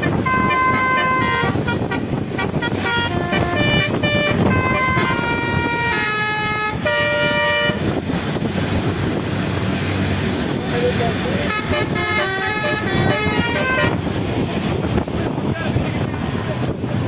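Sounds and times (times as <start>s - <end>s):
musical air horn tune: 0.0s - 7.9s, 11.4s - 14.0s
bus engine running: 0.0s - 17.0s.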